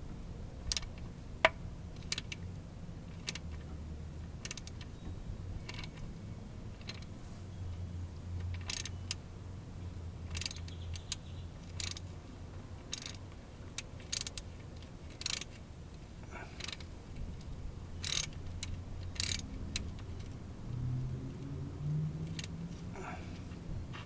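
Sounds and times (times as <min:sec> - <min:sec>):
metal tool clicks and scrapes: 0:18.0 - 0:20.4.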